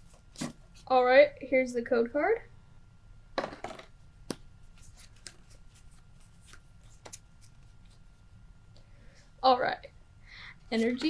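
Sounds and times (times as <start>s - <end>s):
papery rustling of cards: 4.6s - 8.1s.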